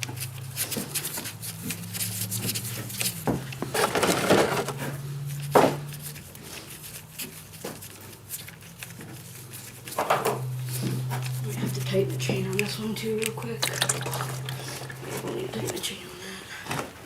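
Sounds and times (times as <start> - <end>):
low steady hum: 0.0 - 16.8
tools knocking and scraping: 2.4 - 6.2, 9.8 - 11.4.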